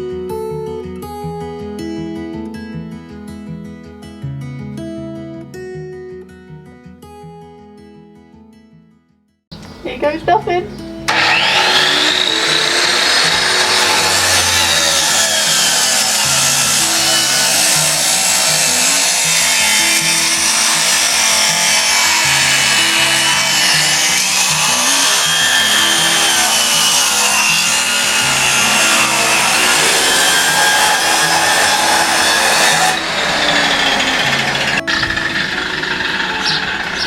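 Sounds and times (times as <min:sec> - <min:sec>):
power saw cutting wood: 0:11.1 - 0:37.0.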